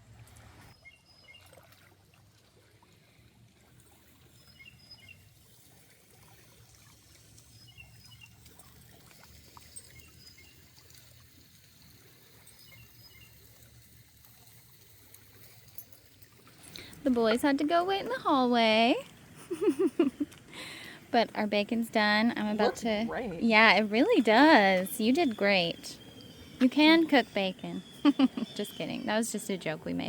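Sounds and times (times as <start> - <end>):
faint high chirps: 24.3 - 29.3.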